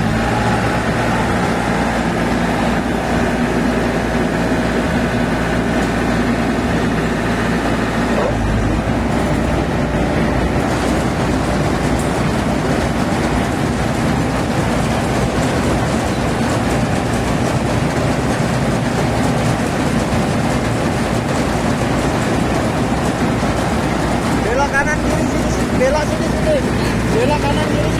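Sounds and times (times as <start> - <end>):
combine harvester running: 0.0 - 27.9.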